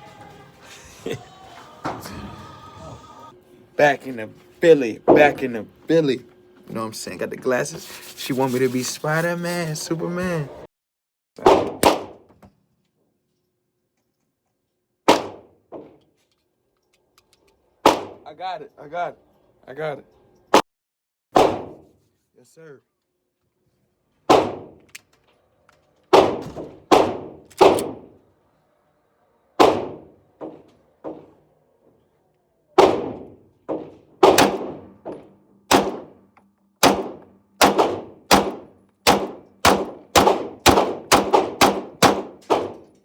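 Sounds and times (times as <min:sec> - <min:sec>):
gunshots with echo: 0:11.4 - 0:12.2, 0:15.1 - 0:15.9, 0:17.8 - 0:18.2, 0:21.4 - 0:21.8, 0:24.3 - 0:24.8, 0:26.1 - 0:28.2, 0:29.6 - 0:31.4, 0:32.8 - 0:36.2, 0:36.8 - 0:42.9.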